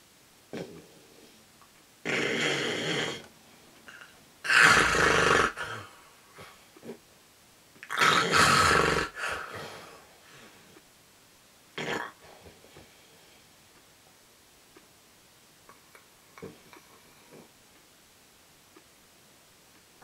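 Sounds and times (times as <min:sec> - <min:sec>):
loud rasping snoring: 0:02.0 - 0:03.3, 0:03.9 - 0:05.9, 0:07.9 - 0:09.8, 0:11.8 - 0:12.2.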